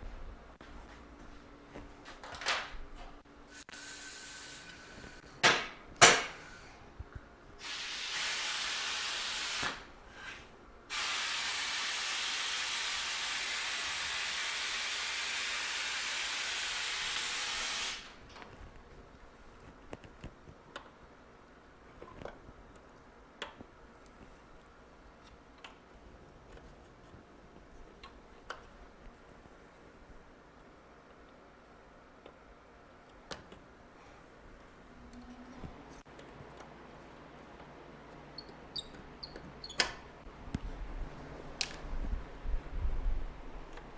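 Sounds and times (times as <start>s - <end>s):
pressurised spray hissing: 7.6s - 9.8s, 10.9s - 18.2s.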